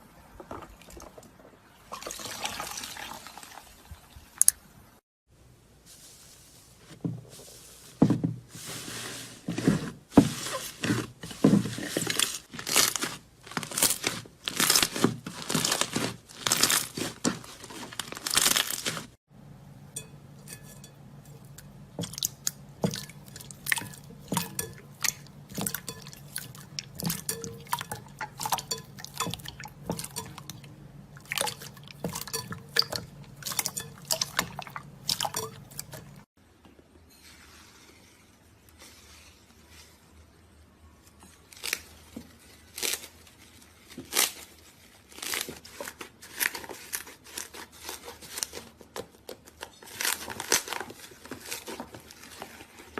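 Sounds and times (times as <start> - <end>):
crunchy slime squishes: 9.6 - 19.2, 41.3 - 52.9
steady low hum: 19.3 - 36.2.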